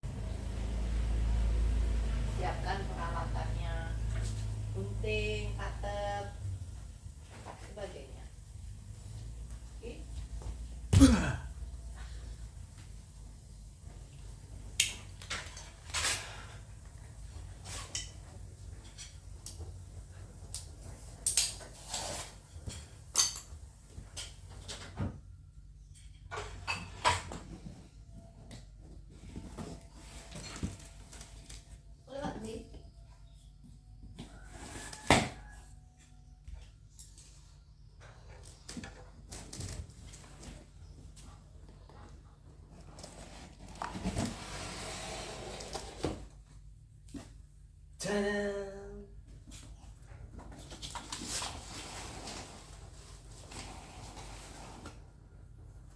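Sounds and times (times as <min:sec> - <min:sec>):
packaging scraping and rustling: 0:42.8 - 0:46.1, 0:50.8 - 0:55.1.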